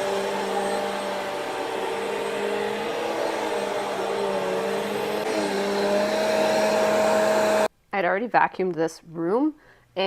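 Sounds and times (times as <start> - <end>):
upright vacuum cleaner running: 0.0 - 7.7.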